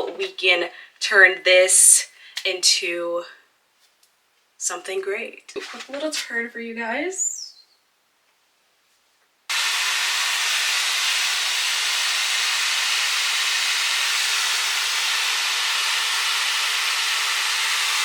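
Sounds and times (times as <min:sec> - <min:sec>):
hair dryer blowing: 0:09.5 - 0:18.0.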